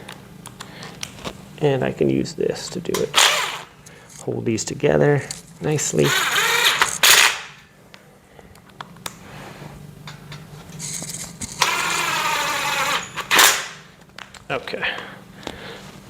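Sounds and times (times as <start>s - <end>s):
power screwdriver motor: 3.2s - 3.7s, 6.0s - 7.5s, 11.6s - 13.8s.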